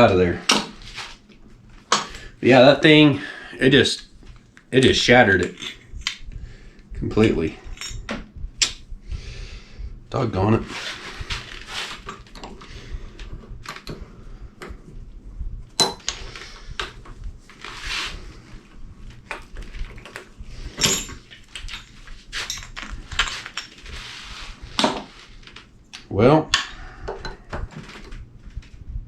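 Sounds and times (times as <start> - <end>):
glass and metal hardware clinking: 20.7 - 23.8.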